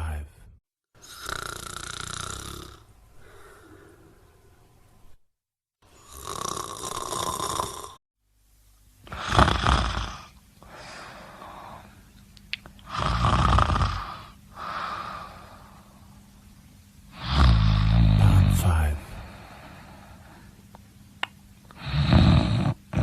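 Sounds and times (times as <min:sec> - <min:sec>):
person snoring: 0:01.0 - 0:04.2, 0:05.9 - 0:08.0, 0:09.0 - 0:12.0, 0:12.8 - 0:16.0, 0:17.1 - 0:20.5, 0:21.7 - 0:23.0.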